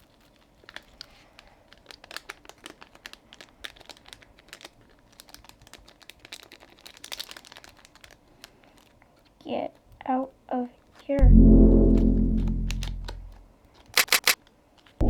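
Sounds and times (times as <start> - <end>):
plastic bag crinkling: 3.7 - 8.2.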